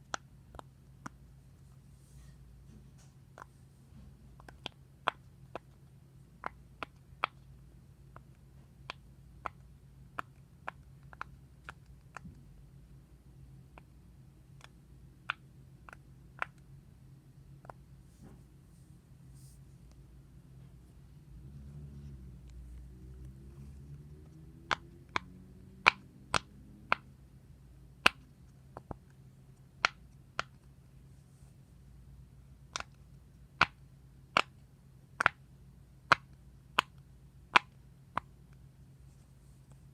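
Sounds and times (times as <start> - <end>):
faint low hum: 0.0 - 39.9
sharp irregular pops: 2.7 - 7.5, 8.1 - 12.5, 13.7 - 16.7, 20.6 - 27.2, 27.9 - 29.2.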